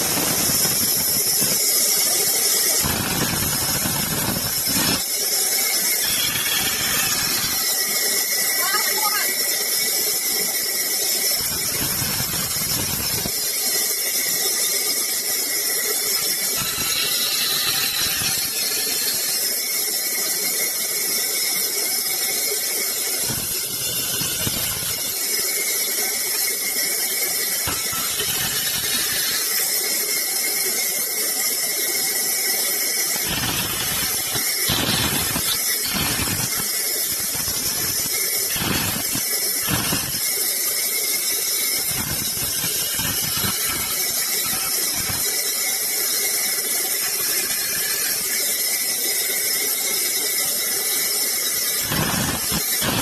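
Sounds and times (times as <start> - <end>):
saw cutting through wood: 0.0 - 14.4, 15.0 - 20.0, 22.1 - 30.4, 32.8 - 49.5, 50.8 - 53.0.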